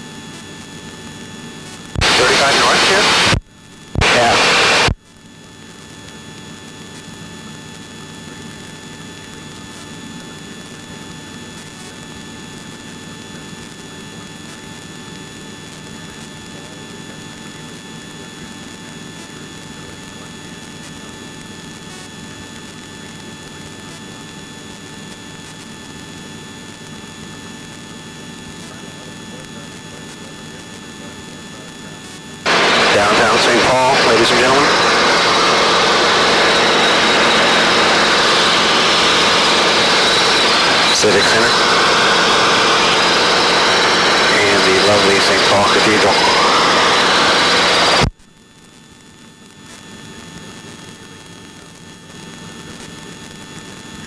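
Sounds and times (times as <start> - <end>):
helicopter engine and rotor noise: 2.0 - 3.4, 4.0 - 4.9, 32.5 - 48.1
high whine: 2.0 - 3.4, 4.0 - 5.0, 32.5 - 48.1.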